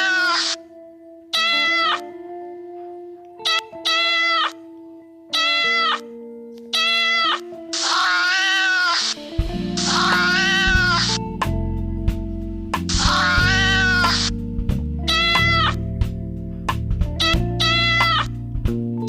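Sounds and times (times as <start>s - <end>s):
cat meowing: 0.0s - 0.6s, 1.3s - 2.2s, 3.4s - 4.7s, 5.3s - 11.2s, 12.9s - 14.3s, 15.1s - 15.8s, 17.2s - 18.3s
background music held notes: 0.0s - 19.0s
heavy bass beat: 9.2s - 18.9s.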